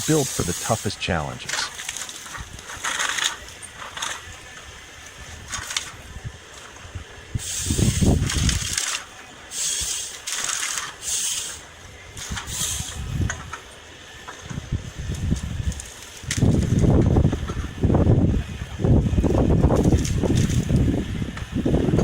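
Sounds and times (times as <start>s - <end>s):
hissing bursts: 0.0s - 3.3s, 7.4s - 13.2s
forestry machine working: 0.0s - 22.0s.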